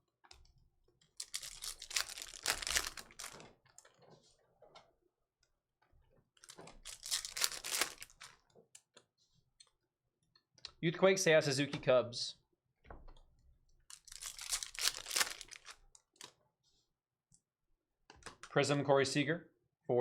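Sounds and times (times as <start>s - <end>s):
card pack wrappers crinkling: 1.2s - 3.4s, 6.4s - 8.4s, 13.9s - 15.8s.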